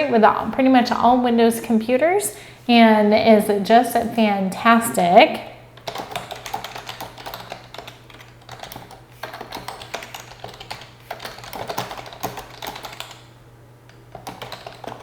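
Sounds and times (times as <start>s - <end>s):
keyboard typing clicks: 5.8s - 13.3s, 13.9s - 15.0s.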